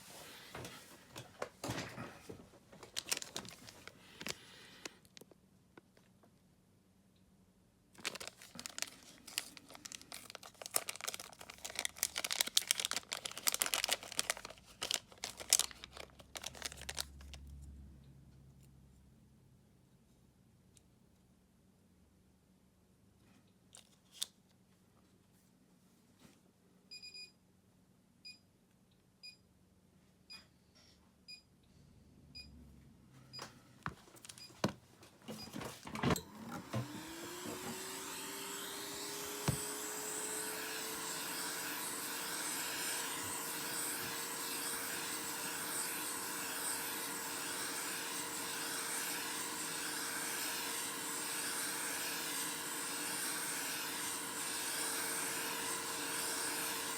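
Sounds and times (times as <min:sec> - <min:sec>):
hot air tool fan blowing: 0:36.1 - 0:56.9.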